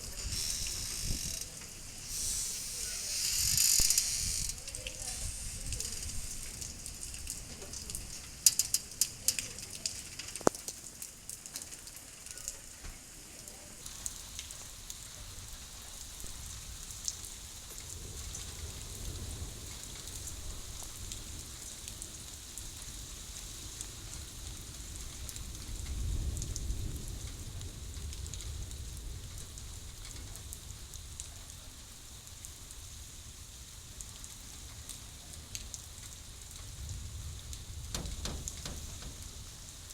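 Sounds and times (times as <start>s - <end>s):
steady rain hiss: 0.0s - 39.9s
sharp tapping drops: 38.0s - 39.3s.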